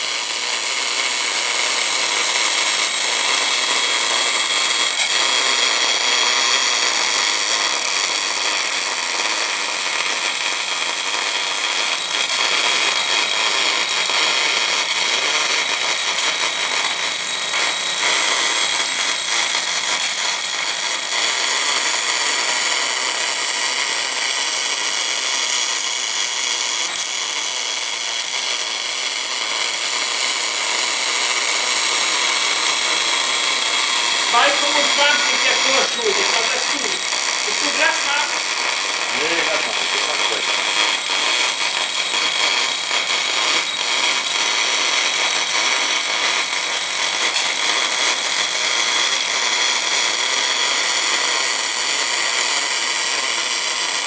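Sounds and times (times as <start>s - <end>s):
welding arc hissing: 0.0s - 54.0s.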